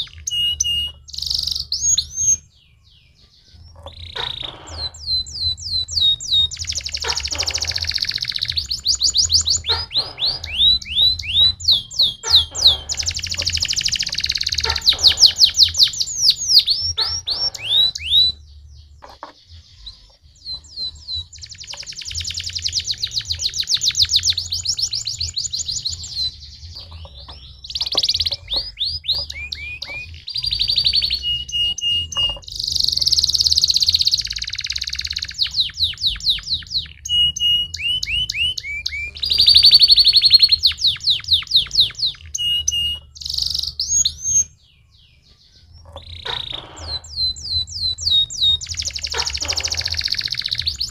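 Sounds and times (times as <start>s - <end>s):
canary singing trills: 0.0s - 50.9s.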